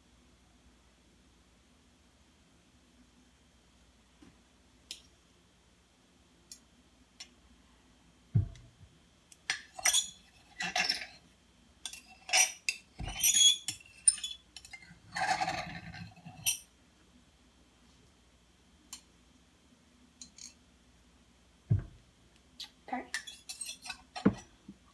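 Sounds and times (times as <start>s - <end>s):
dull thump: 8.3s - 8.7s, 21.7s - 22.0s
dishes and utensils clinking: 9.8s - 11.2s, 11.9s - 16.6s, 23.2s - 24.5s.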